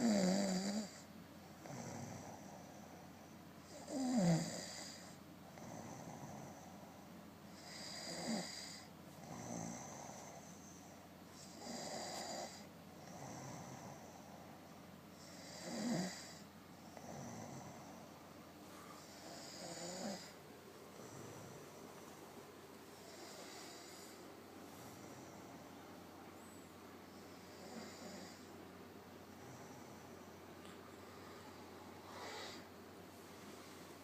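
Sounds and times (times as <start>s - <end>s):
person snoring: 0.0s - 1.0s, 3.7s - 6.6s, 7.6s - 10.5s, 11.4s - 14.2s, 15.2s - 16.4s, 18.8s - 22.1s, 23.0s - 25.6s, 27.2s - 28.5s, 31.3s - 32.7s.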